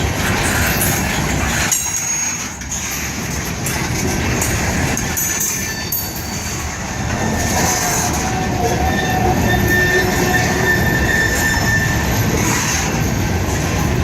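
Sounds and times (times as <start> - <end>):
train cars rumbling on rails: 0.0 - 14.0
wheel squeal: 5.3 - 13.1.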